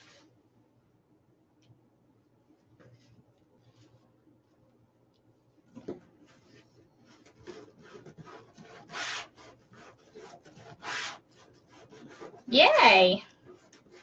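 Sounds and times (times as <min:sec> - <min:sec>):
rubbing and rustling materials: 0:02.6 - 0:04.7, 0:05.5 - 0:14.0.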